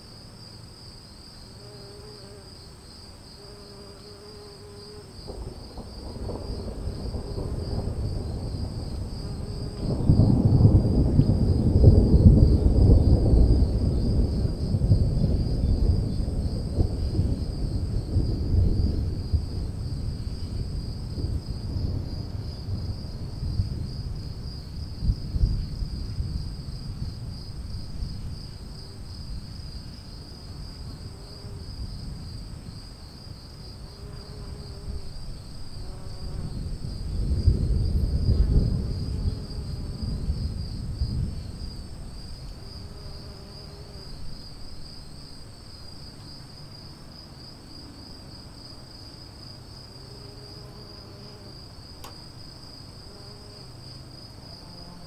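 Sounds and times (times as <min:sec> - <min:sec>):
crickets chirring: 0:00.0 - 0:55.0
distant thunder rumbling: 0:05.2 - 0:33.4, 0:34.1 - 0:46.0.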